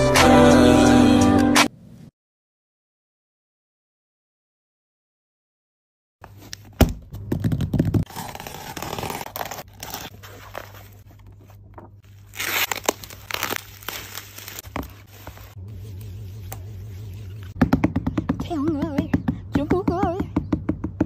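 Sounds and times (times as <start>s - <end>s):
packaging tearing and rustling: 8.0s - 11.1s, 12.0s - 15.6s.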